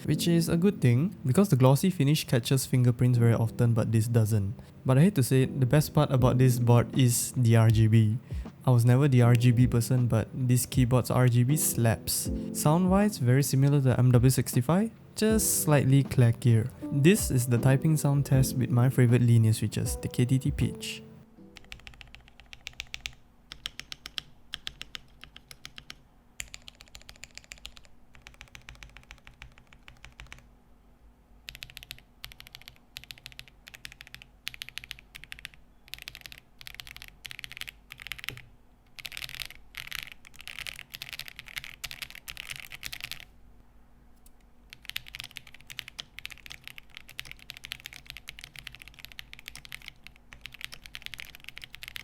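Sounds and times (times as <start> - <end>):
mechanical keyboard typing: 21.6 - 30.5, 31.5 - 43.3, 44.7 - 52.0.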